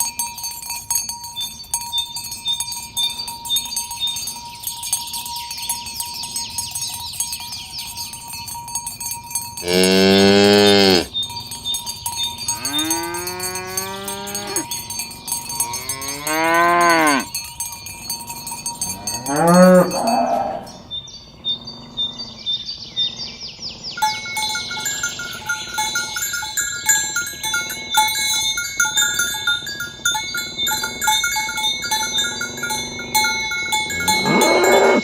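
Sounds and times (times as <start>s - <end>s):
cows mooing: 9.6s - 11.1s, 12.5s - 14.8s, 15.6s - 17.3s, 18.8s - 20.8s, 29.9s - 35.0s.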